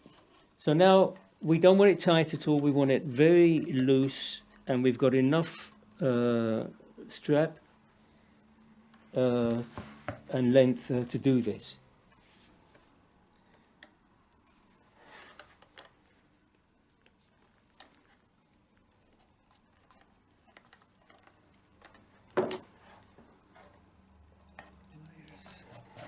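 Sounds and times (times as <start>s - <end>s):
leather strap rustling and scraping: 14.4s - 16.3s.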